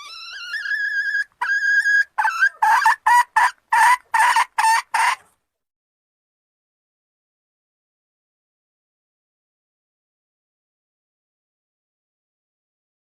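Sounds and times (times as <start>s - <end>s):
hen cackling: 0.0s - 5.3s.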